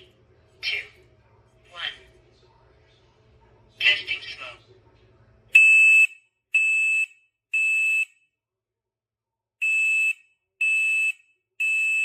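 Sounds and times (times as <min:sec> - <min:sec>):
smoke alarm beeps: 0:05.6 - 0:08.2, 0:09.6 - 0:12.0.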